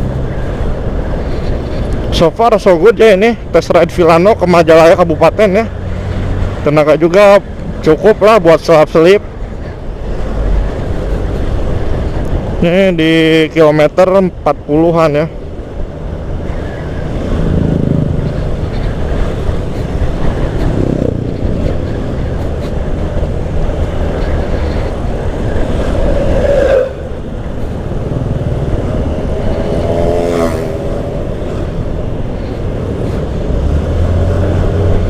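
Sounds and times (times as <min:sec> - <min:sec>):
rushing wind: 0:00.0 - 0:35.0
traffic noise: 0:00.0 - 0:35.0
scooter engine hum: 0:15.4 - 0:35.0
rising tone: 0:25.3 - 0:32.2.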